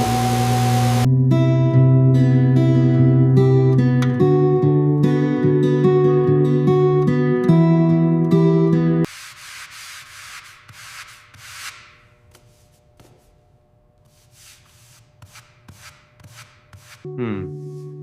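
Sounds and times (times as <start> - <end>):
acoustic guitar music: 0.1 - 9.1, 17.1 - 18.0
hand sanding strokes: 9.1 - 18.0.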